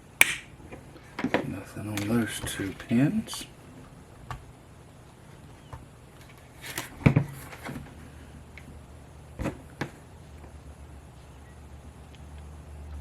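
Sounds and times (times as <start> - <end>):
handling clicks and knocks: 0.2 - 4.5.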